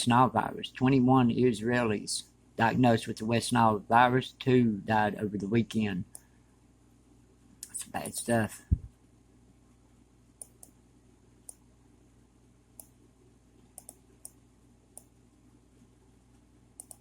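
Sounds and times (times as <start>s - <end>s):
faint steady hum: 0.0s - 17.0s
computer mouse clicking: 10.4s - 10.8s, 12.8s - 13.0s, 13.7s - 15.1s, 16.8s - 17.0s.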